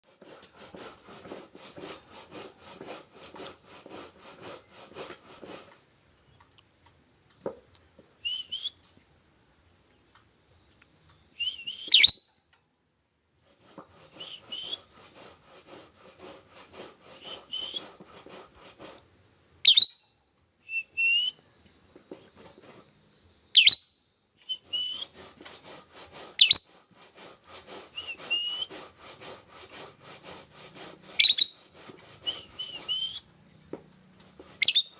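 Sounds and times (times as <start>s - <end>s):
lovebird piercing shriek: 11.8s - 12.2s, 34.6s - 34.9s
lovebird chattering and chirping: 11.9s - 12.2s, 19.6s - 20.0s, 23.5s - 24.0s, 26.4s - 26.8s, 31.2s - 31.6s, 34.6s - 34.9s.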